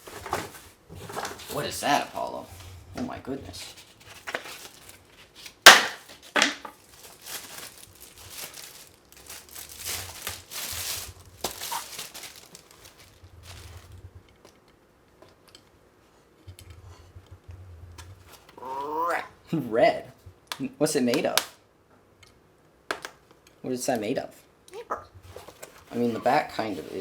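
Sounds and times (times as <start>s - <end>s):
packaging crinkling and tearing: 3.5s - 14.1s.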